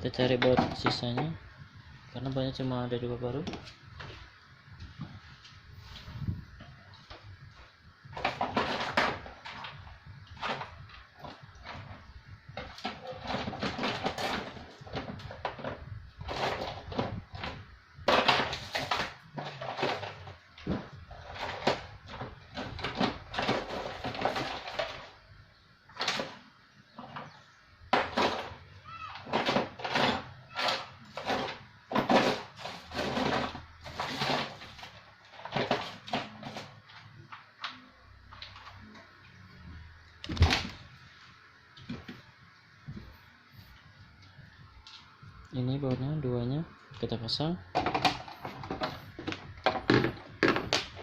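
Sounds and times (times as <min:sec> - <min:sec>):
small parts and tools clattering: 0:08.1 - 0:12.0, 0:12.6 - 0:25.3, 0:25.9 - 0:39.3, 0:47.0 - 0:51.0.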